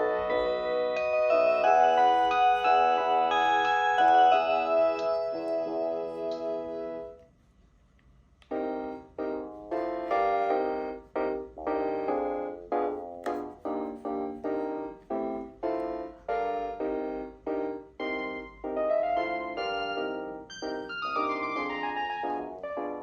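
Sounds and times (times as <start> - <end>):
phone melody ringtone: 0.0 - 7.2, 14.4 - 23.0.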